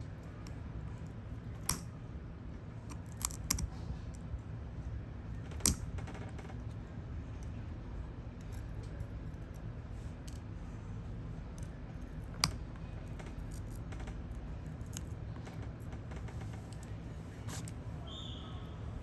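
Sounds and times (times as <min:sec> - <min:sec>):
steady low hum: 0:00.0 - 0:19.0
small hand tools clicking and scraping: 0:17.5 - 0:17.8.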